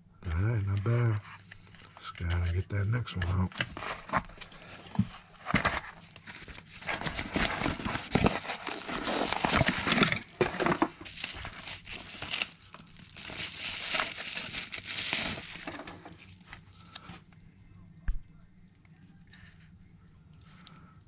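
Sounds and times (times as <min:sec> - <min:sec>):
packaging crinkling: 0:03.6 - 0:16.3.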